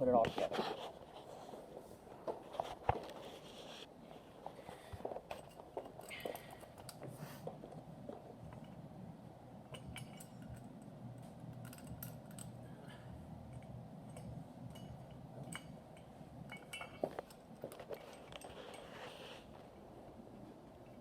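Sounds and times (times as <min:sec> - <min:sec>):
metal parts clinking and knocking: 0:09.7 - 0:18.9.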